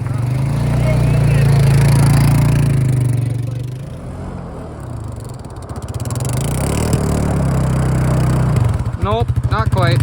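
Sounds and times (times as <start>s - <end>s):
vehicle engine revving: 0.0s - 10.0s.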